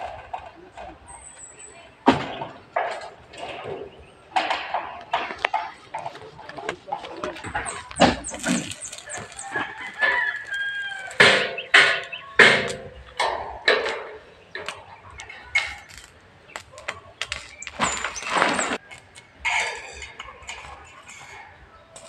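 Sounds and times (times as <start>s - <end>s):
chickens clucking: 2.2s - 22.0s
rooster crowing: 9.1s - 11.2s.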